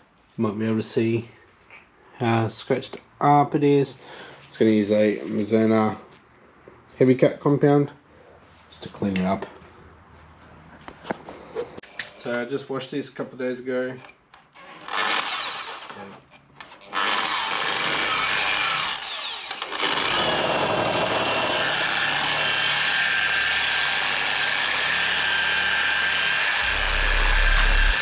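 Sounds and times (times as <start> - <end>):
electric machine polisher: 19.0 - 28.0
music with heavy bass: 26.6 - 28.0.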